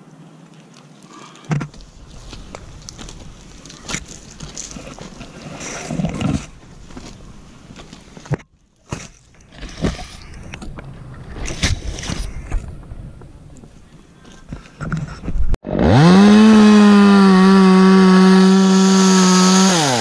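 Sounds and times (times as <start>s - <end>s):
rustling: 0.6s - 15.5s.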